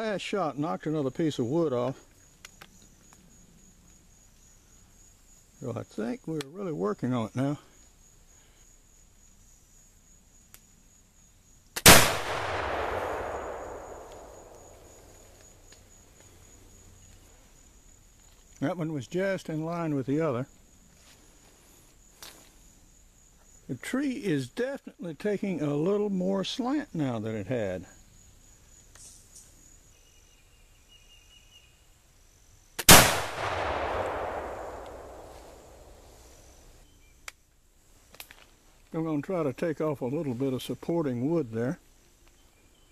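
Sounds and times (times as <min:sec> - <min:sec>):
rifle hammer click: 0:11.8 - 0:15.2
rifle shot echoing: 0:11.8 - 0:15.3, 0:32.8 - 0:36.4.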